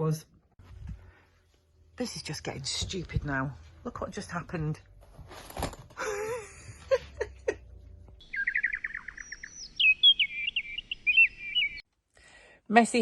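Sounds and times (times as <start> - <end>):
songbird singing: 8.0 - 11.9.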